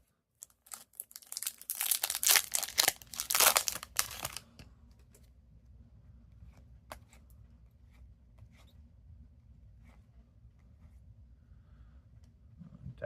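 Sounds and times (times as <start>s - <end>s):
wrapper tearing and crinkling: 0.4s - 4.5s.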